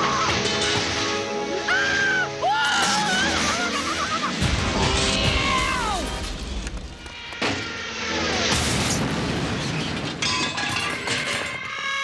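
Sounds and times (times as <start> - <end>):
background music: 0.0 - 7.1.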